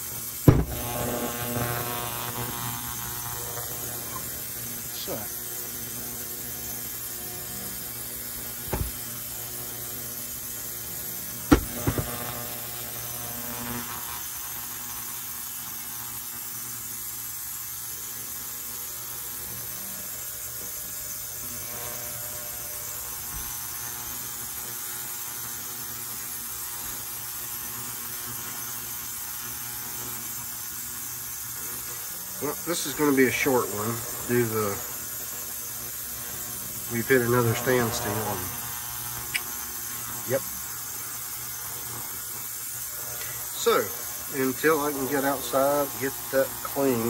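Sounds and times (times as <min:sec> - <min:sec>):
steady low hum: 0:00.0 - 0:14.8
metal knocks on workbench: 0:00.5 - 0:00.8, 0:08.7 - 0:09.0, 0:11.5 - 0:12.1.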